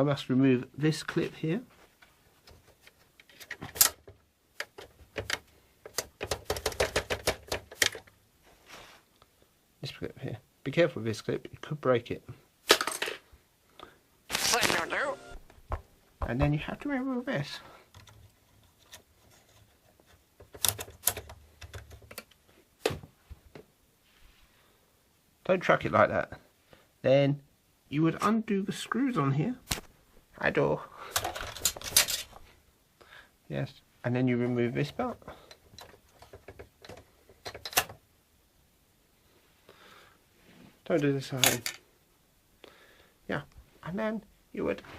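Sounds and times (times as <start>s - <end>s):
plastic clicks and rattles: 2.5s - 8.2s, 20.4s - 22.4s, 35.5s - 38.0s.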